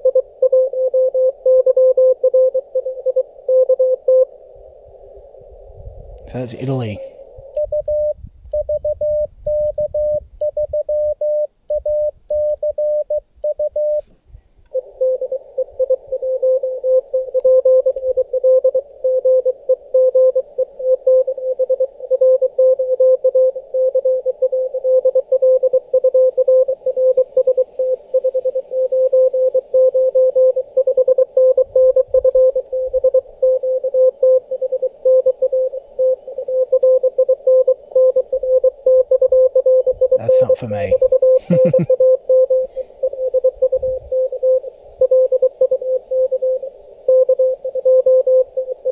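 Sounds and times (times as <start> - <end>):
receiver hiss: 0.0 - 14.1, 14.7 - 48.9
morse code tones: 6.3 - 14.0, 29.8 - 48.9.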